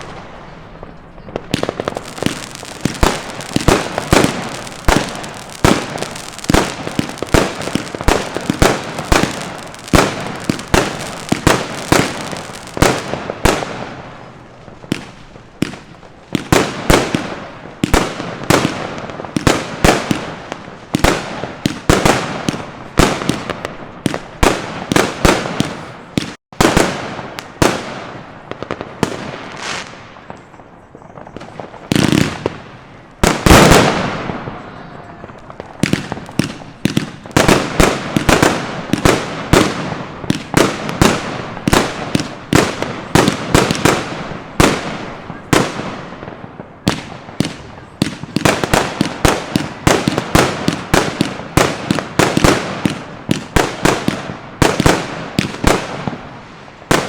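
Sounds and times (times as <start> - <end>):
firework battery rapid bangs: 1.5 - 14.0.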